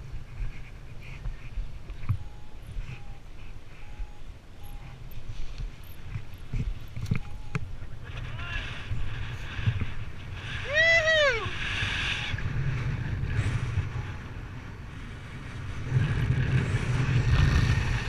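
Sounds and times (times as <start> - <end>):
wind buffeting microphone: 0.0 - 18.0
short pitched cry: 10.6 - 11.6.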